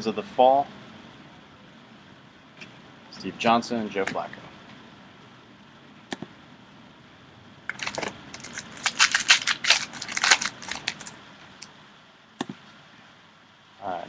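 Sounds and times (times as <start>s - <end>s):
foil wrapper crinkling: 7.7s - 11.2s.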